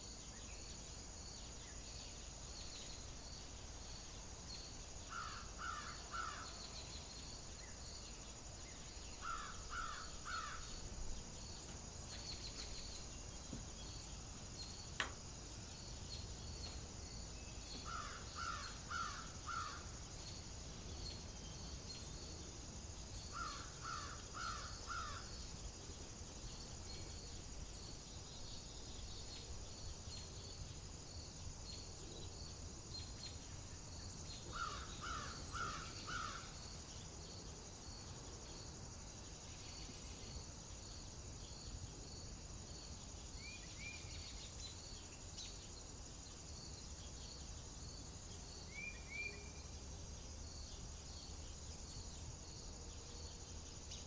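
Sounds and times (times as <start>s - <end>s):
insects trilling: 0.0s - 54.0s
bird harsh cawing calls: 5.1s - 6.6s, 9.2s - 10.7s, 17.8s - 19.9s, 23.3s - 25.3s, 34.5s - 36.6s.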